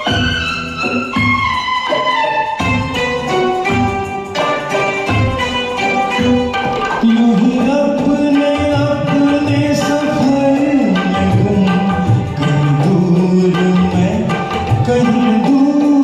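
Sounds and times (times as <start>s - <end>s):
karaoke backing track with tabla: 0.0s - 16.0s
man singing: 6.9s - 16.0s.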